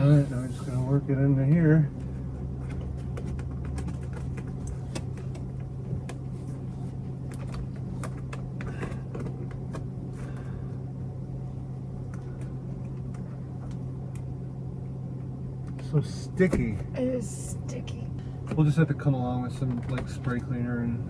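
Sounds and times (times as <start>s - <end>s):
hands rubbing vinyl: 0.0s - 0.9s.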